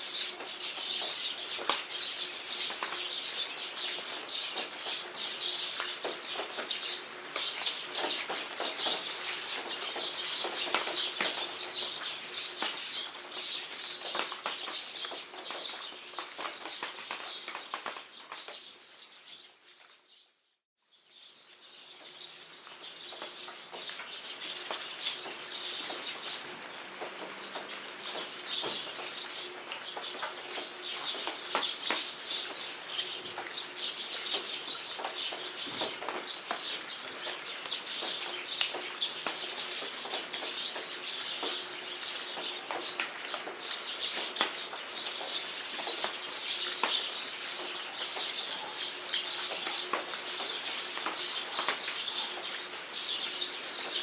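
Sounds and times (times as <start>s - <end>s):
rain pattering: 0.0s - 19.0s, 21.8s - 54.0s
birds chirping: 21.1s - 54.0s.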